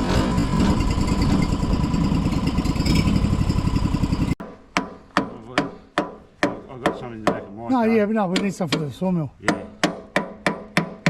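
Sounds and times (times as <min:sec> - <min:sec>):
sawmill engine running: 0:00.0 - 0:04.4.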